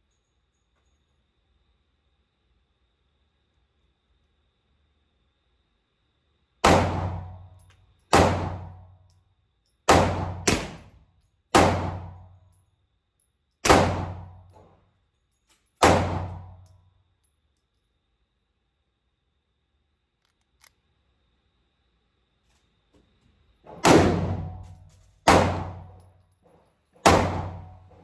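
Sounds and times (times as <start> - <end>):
pistol shots echoing indoors: 6.6 - 9.2, 9.9 - 12.5, 13.6 - 14.5, 15.7 - 16.8, 23.7 - 26.1, 27.0 - 28.0.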